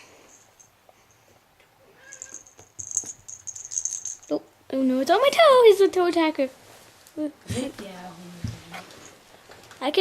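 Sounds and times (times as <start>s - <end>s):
bell jingling in toy ball: 2.0s - 4.4s.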